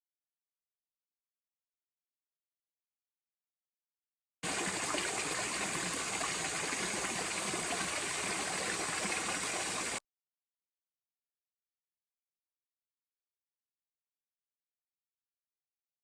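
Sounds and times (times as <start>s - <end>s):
running water rushing: 4.4s - 10.0s.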